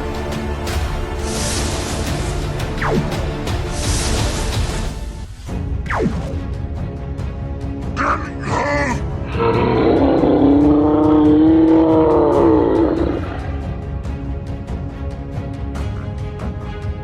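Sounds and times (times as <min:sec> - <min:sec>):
roar-like cry: 0:08.0 - 0:13.8.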